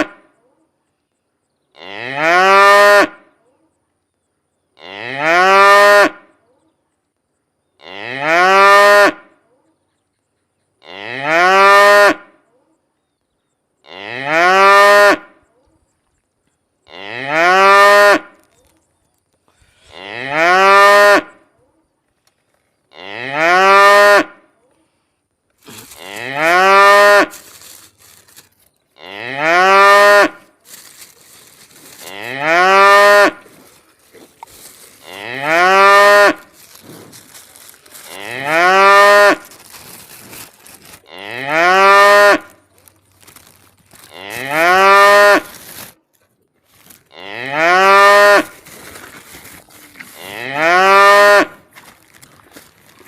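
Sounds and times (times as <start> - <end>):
cow mooing: 47.1 - 48.5.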